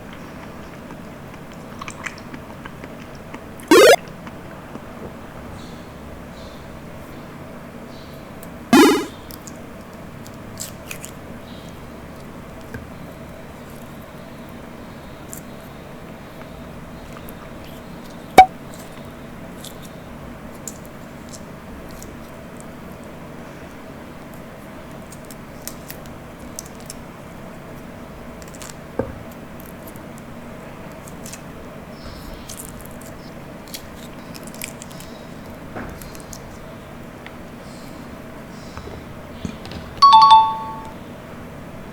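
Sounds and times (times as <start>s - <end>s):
wet squelch of eating: 0.0s - 3.6s
mouth clicks: 3.7s - 4.0s.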